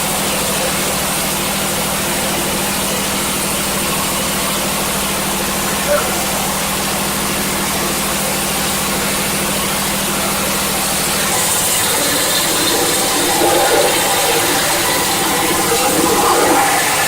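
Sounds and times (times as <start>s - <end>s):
motor hum: 0.0s - 17.0s
mechanical rushing noise: 9.9s - 17.0s.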